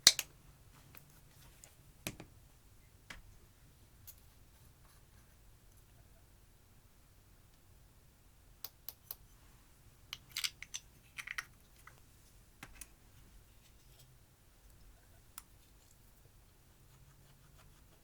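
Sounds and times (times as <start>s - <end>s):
makeup clicking and cracking: 0.0s - 0.3s, 10.2s - 12.0s.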